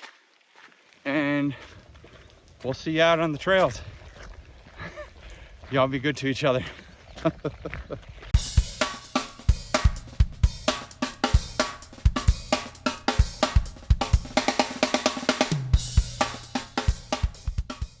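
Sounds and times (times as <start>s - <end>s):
drum kit beat: 8.4s - 18.0s
low bass line: 8.4s - 18.0s.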